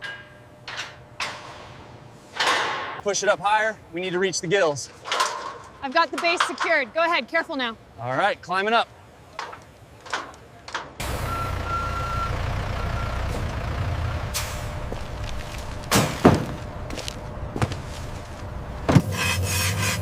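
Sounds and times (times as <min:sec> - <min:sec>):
heavy machinery engine rumble: 0:09.3 - 0:20.0
brief beep: 0:11.2 - 0:13.3
sharp knocks: 0:15.9 - 0:16.7.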